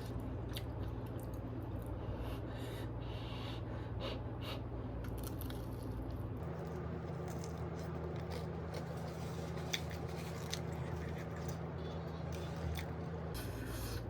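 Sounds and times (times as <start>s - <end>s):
low hum: 0.0s - 14.0s
person chewing food: 5.0s - 14.0s.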